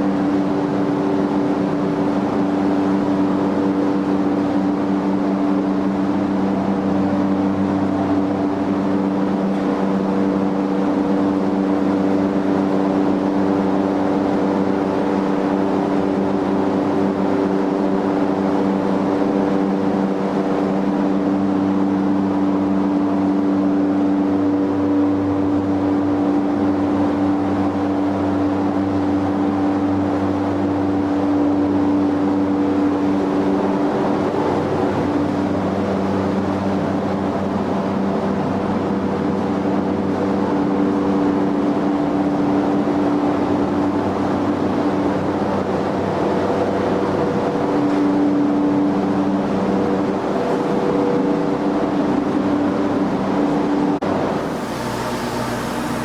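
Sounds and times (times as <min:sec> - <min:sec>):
motor humming: 0:54.3 - 0:56.0.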